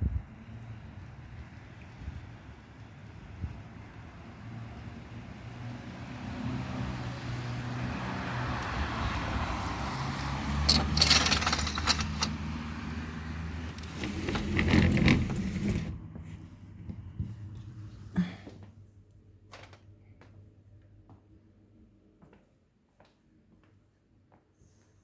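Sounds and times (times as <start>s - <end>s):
vehicle engine hum: 0.0s - 18.2s
street traffic: 0.0s - 18.6s
clattering clicks: 10.7s - 12.4s.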